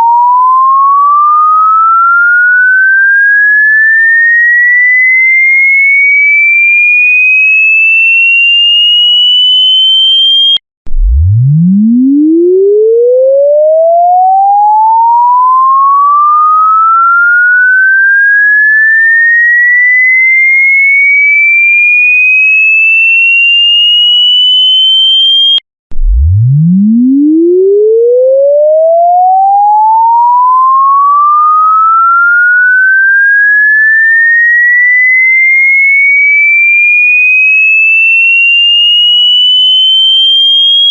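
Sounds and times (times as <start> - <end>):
electronic tone sweeping upward: 10.2 - 18.7, 24.0 - 34.6.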